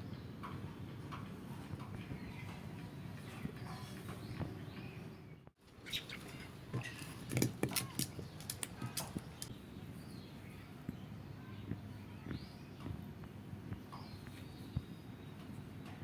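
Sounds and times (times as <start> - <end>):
small animal chirping: 5.8 - 9.5
sharp clicks and taps: 7.2 - 9.5.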